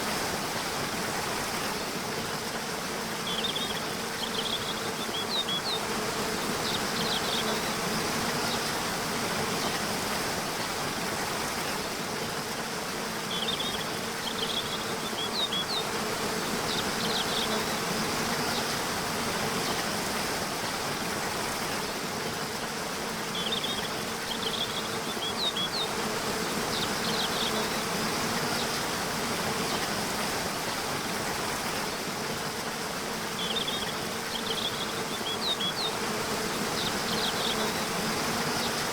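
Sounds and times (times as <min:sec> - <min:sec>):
small birds chirping: 0:03.2 - 0:08.9, 0:13.2 - 0:18.8, 0:22.5 - 0:30.0, 0:32.7 - 0:38.9.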